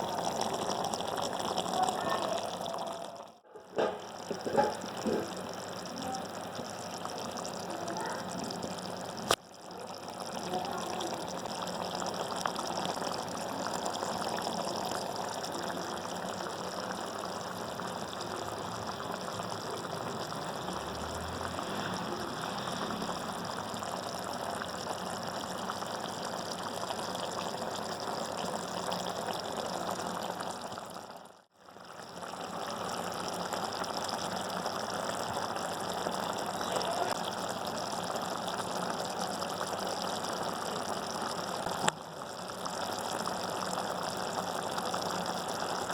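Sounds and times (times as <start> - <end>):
food cooking with watery hiss: 0.0 - 45.9.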